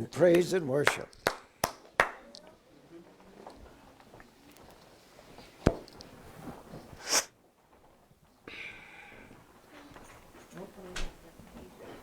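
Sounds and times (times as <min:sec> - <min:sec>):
short hissing burst: 0:07.0 - 0:07.3.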